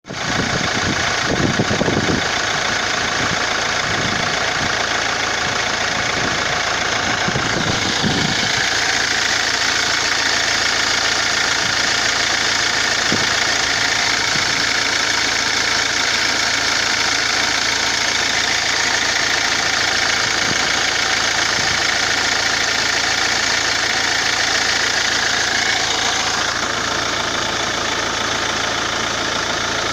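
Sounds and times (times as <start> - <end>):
car engine running: 0.0 - 29.9
higher whir: 7.0 - 10.3.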